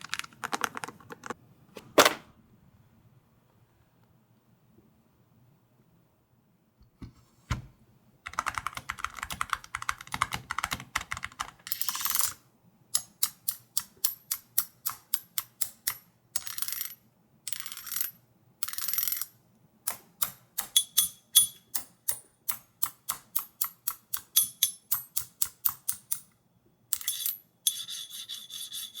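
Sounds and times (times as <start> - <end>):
mechanical keyboard typing: 0.0 - 1.4, 8.3 - 12.4.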